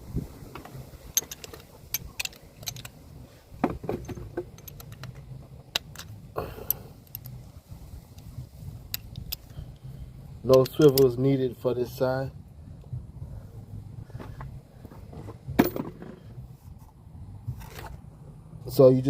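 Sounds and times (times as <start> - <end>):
metal hand tools clinking: 1.0 - 3.0, 3.9 - 7.4, 10.5 - 11.2.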